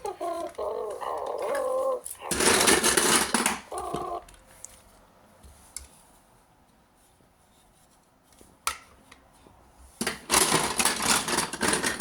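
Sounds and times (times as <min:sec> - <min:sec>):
marbles clattering on marble run: 0:10.0 - 0:12.0.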